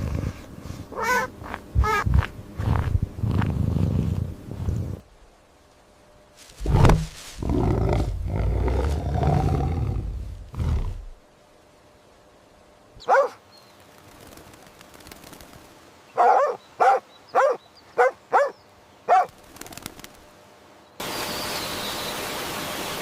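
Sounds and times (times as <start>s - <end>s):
steady hiss: 0.0s - 17.8s, 18.7s - 23.0s
short animal calls: 0.9s - 2.3s.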